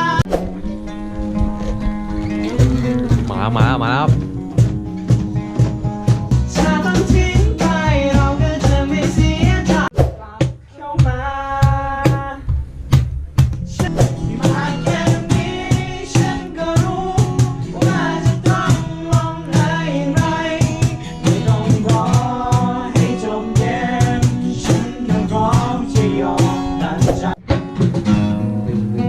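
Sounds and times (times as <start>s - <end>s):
guitar: 0.0s - 29.0s
steady drum beat: 0.3s - 28.1s
person singing: 2.4s - 3.8s, 6.5s - 12.5s, 13.8s - 27.4s.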